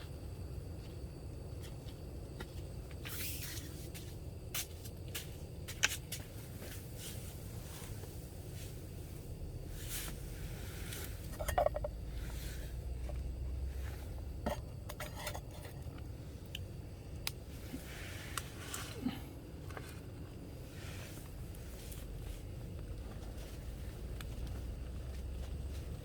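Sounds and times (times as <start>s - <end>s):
low steady rumble: 0.0s - 26.0s
cups and utensils clinking: 11.3s - 12.0s
ringing clink: 11.3s - 12.0s.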